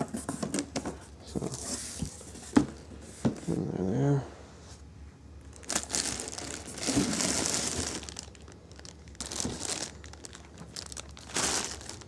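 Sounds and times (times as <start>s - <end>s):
packing material crinkling: 5.4s - 12.0s.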